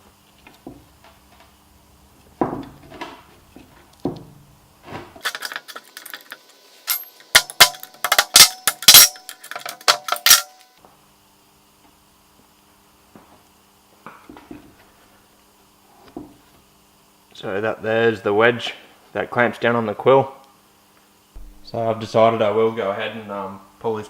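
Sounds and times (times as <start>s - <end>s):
steel parts knocking together: 5.2s - 10.6s
ringing metal clinks: 6.9s - 10.6s.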